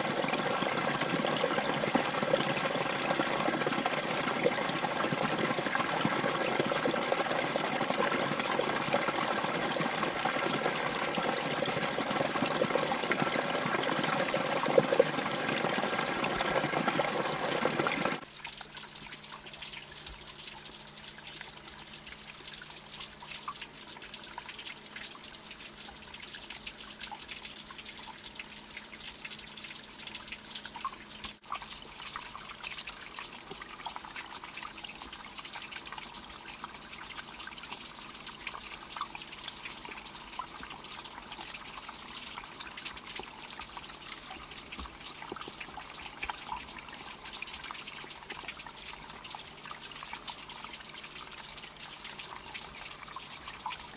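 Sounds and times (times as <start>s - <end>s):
running water rushing: 0.0s - 18.2s.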